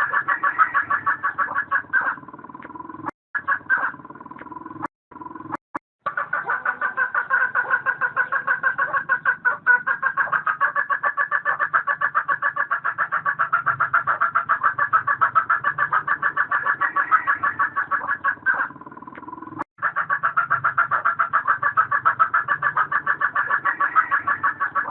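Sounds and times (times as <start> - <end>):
hen cackling: 0.0 - 24.9.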